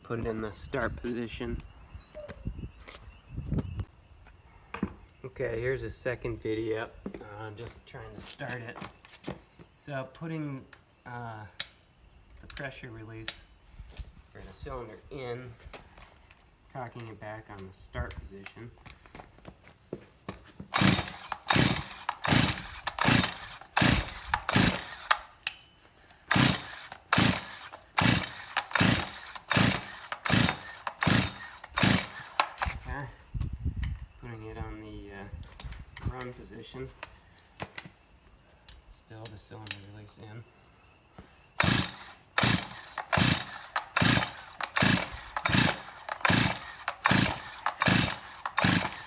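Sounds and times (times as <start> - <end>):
chainsaw recoil pull-starting: 20.7 - 25.6, 26.3 - 33.0, 41.6 - 49.0.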